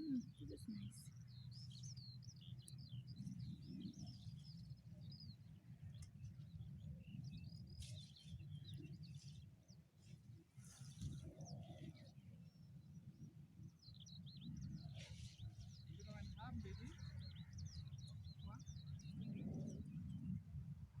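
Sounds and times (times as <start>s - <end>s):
small birds chirping: 0.0s - 20.6s.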